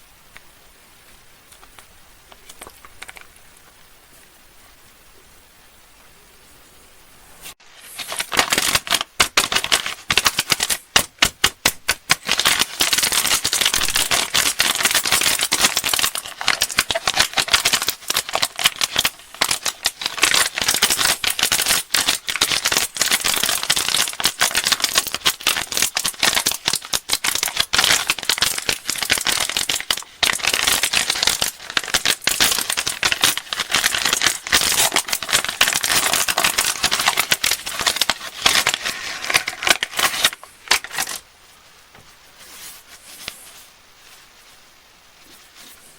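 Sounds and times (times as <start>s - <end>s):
plastic wrappers crinkling: 1.5s - 3.5s, 7.6s - 41.3s.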